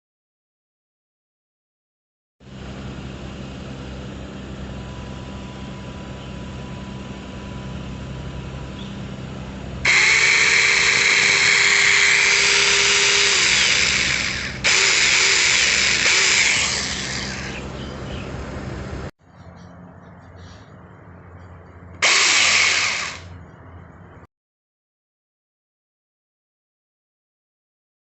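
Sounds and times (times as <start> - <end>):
chainsaw running: 9.8 - 17.8, 22.0 - 23.4.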